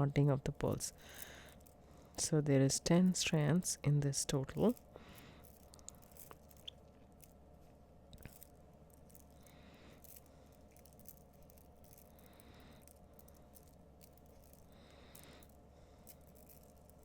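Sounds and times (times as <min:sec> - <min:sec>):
soft handling rustles: 0:04.5 - 0:17.0.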